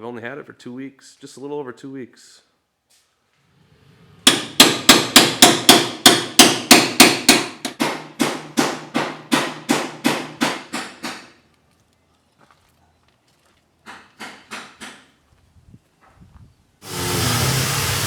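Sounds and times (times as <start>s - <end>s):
hammer striking sheet metal: 4.3s - 11.3s.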